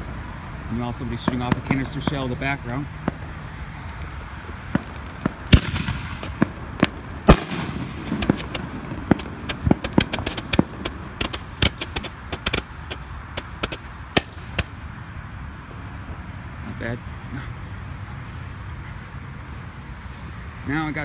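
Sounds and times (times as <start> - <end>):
fireworks bangs: 0.0 - 14.9
fireworks popping and crackling: 0.0 - 15.0.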